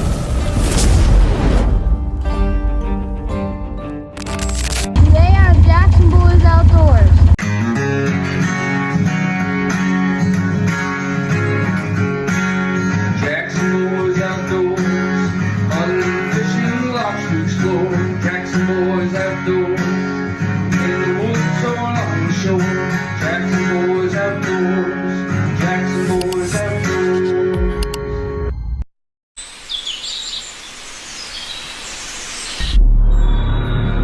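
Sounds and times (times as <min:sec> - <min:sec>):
acoustic guitar music: 0:03.8 - 0:26.1.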